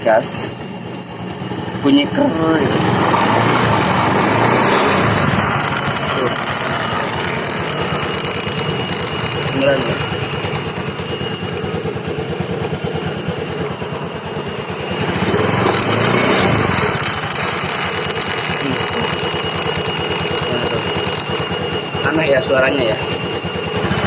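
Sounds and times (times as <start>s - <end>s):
scooter engine revving and idling: 0.0s - 24.0s
crackling from wood against wheel: 16.8s - 20.5s.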